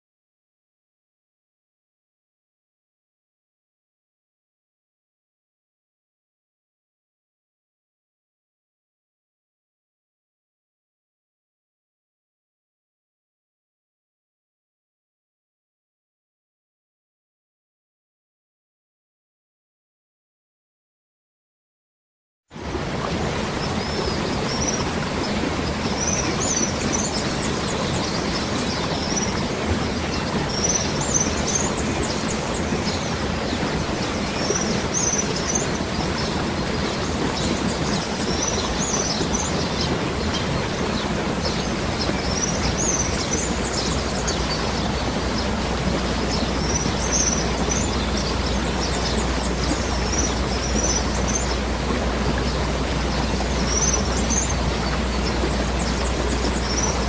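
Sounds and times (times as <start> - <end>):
waterfall rushing: 22.6 - 57.0
small birds chirping: 23.3 - 57.0.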